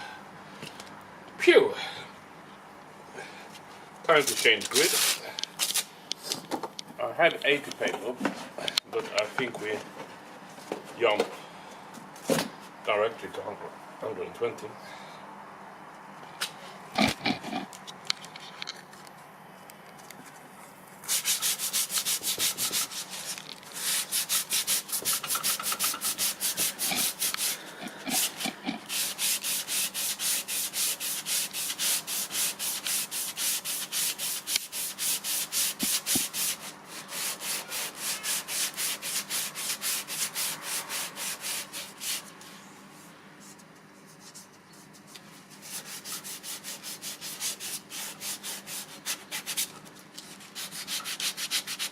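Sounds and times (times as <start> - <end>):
sandpaper rubbing back and forth: 4.2 - 5.3, 21.1 - 42.3, 44.0 - 49.7, 50.3 - 51.9.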